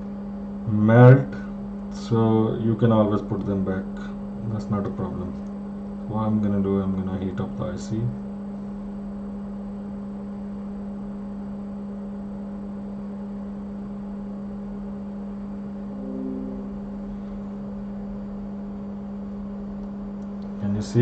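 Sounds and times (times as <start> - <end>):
low electrical hum: 0.0 - 21.0
faint higher tone: 15.8 - 17.5.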